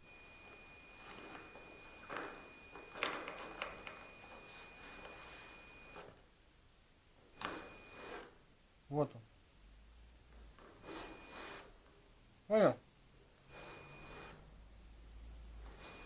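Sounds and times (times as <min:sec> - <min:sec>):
high-pitched continuity beep: 0:00.0 - 0:06.0, 0:07.4 - 0:08.2, 0:10.8 - 0:11.6, 0:13.5 - 0:14.4, 0:15.8 - 0:16.0.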